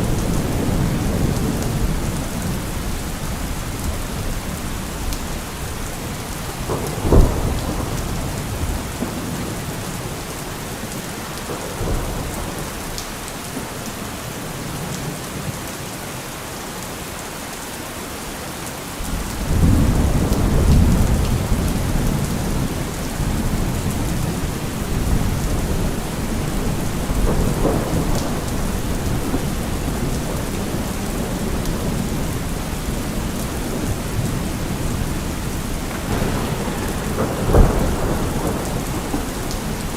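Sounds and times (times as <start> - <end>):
thunder rumbling: 0.0 - 12.9, 19.1 - 39.9
steady rain: 0.0 - 39.9
thunder crack: 6.4 - 10.2, 19.1 - 39.9.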